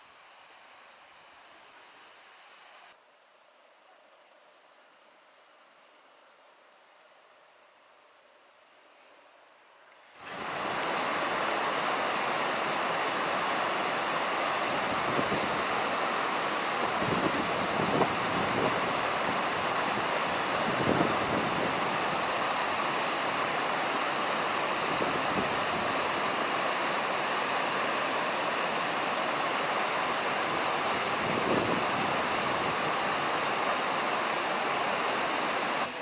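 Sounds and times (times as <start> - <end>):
wind gusts on microphone: 10.2 - 35.9
waterfall rushing: 10.2 - 36.0.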